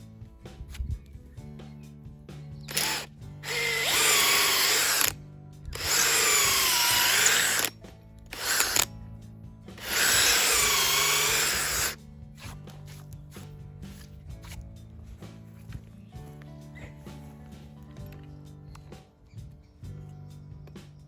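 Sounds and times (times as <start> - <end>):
power drill boring into wood: 2.7 - 8.9, 9.8 - 12.0.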